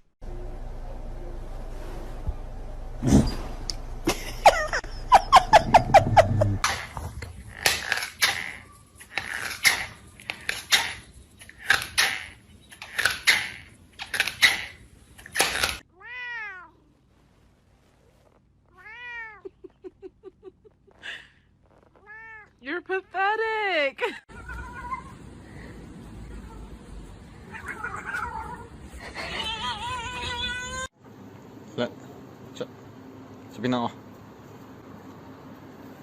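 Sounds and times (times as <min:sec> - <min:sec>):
cat meowing: 0:15.9 - 0:16.8, 0:18.7 - 0:19.5, 0:22.0 - 0:22.6, 0:24.3 - 0:25.2, 0:26.2 - 0:30.9
cat crying hoarsely: 0:24.3 - 0:30.9.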